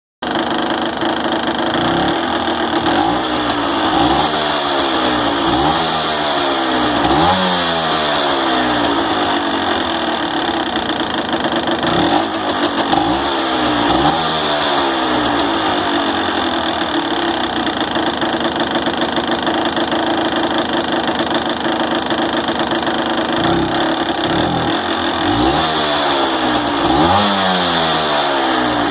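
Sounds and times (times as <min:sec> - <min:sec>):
two-stroke engine revving and idling: 0:00.2 - 0:28.9.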